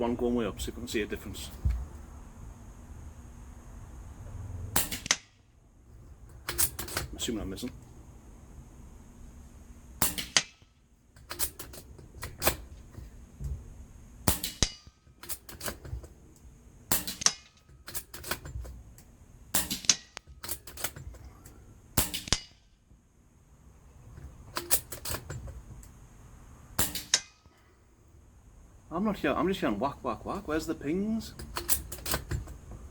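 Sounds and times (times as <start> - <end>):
air rifle shots: 4.7 - 5.3, 10.0 - 10.6, 14.2 - 15.8, 16.9 - 17.6, 19.5 - 20.9, 22.0 - 22.6, 26.8 - 27.5.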